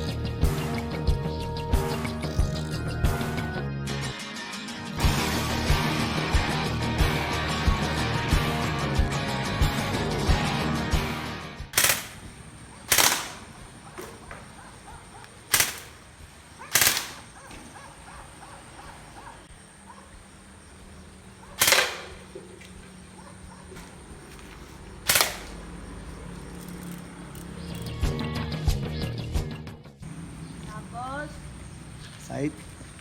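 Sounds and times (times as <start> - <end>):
airsoft gun shots: 11.8 - 18.0, 21.3 - 23.0, 23.7 - 25.8.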